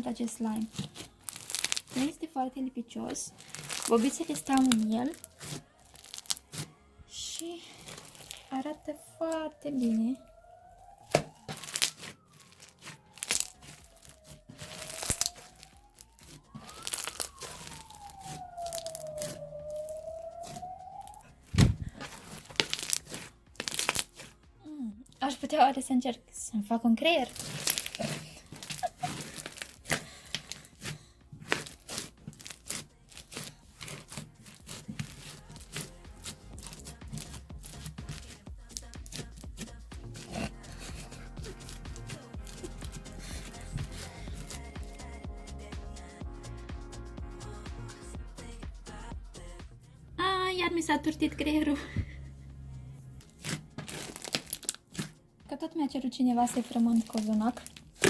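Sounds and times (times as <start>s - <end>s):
slime squished by hand crackling: 0.0s - 2.3s, 3.1s - 24.4s, 27.1s - 45.0s, 53.2s - 55.2s, 56.4s - 58.0s
siren wailing: 0.0s - 26.1s, 27.0s - 45.3s, 56.3s - 58.0s.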